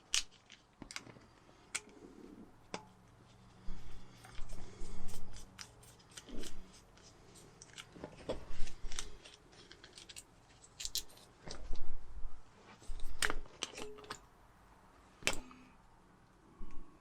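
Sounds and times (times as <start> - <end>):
small parts clicking and knocking: 0.0 - 2.0, 2.7 - 11.9.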